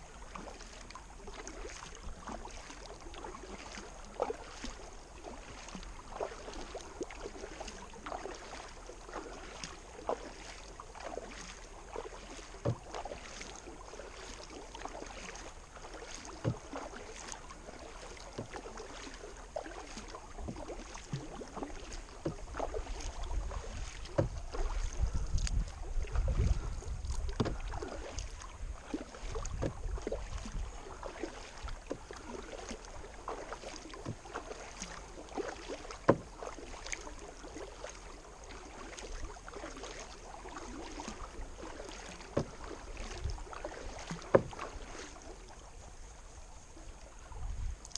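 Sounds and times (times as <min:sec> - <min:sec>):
paddle splashing in water: 0:00.0 - 0:47.9
wind rumble on microphone: 0:22.2 - 0:31.0, 0:45.8 - 0:47.9.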